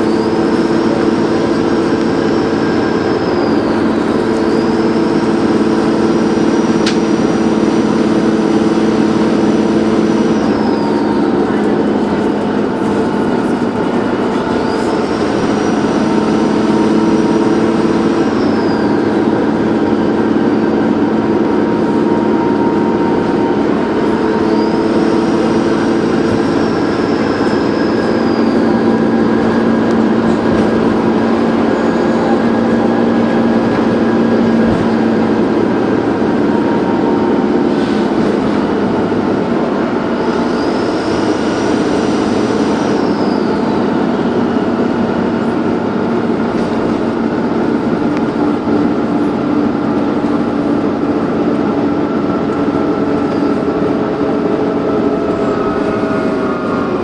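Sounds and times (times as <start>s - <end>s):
turbo whistle: 0.0s - 11.6s, 14.4s - 19.4s, 24.2s - 29.1s, 40.3s - 43.8s
bus diesel engine running: 0.0s - 57.0s.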